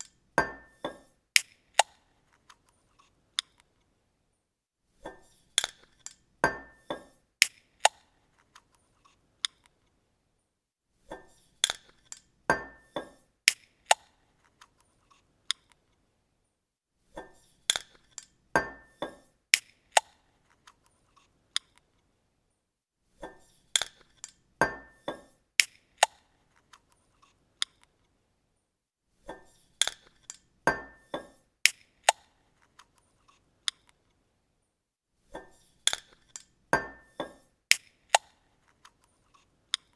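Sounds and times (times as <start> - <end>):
bottle cap opening clicks: 1.4 - 2.0, 13.5 - 14.1, 31.7 - 32.3, 37.7 - 38.4.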